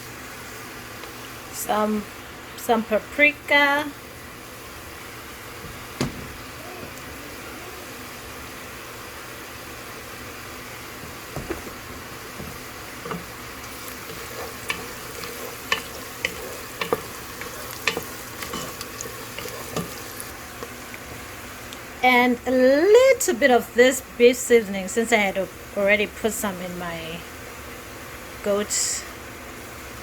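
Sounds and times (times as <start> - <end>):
knock: 6.0 - 6.4
vegetables sizzling in oil: 8.1 - 23.2
spoon stirring and clicking on pot: 12.4 - 21.0.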